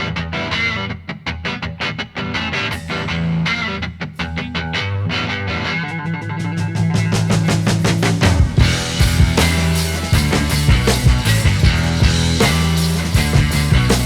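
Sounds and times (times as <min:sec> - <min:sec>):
rock music with electric guitar: 0:00.0 - 0:14.0.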